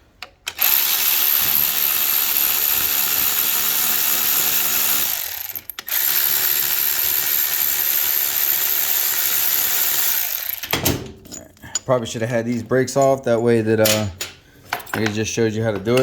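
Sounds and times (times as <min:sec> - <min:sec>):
electric ratchet spinning bolts: 0:00.5 - 0:10.9.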